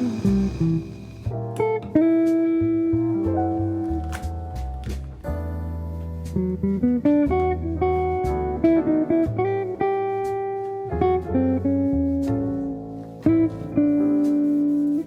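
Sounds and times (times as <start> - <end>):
bass line: 0.0 - 1.8
plucked guitar melody: 0.0 - 5.0, 6.4 - 12.2, 13.2 - 15.0.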